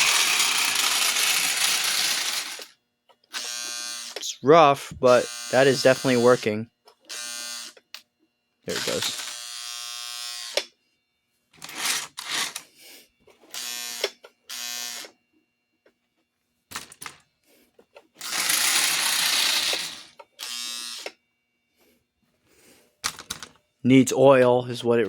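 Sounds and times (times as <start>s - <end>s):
toy train motor buzzing: 0.0s - 4.4s, 5.0s - 10.8s, 11.5s - 15.2s, 16.7s - 21.3s.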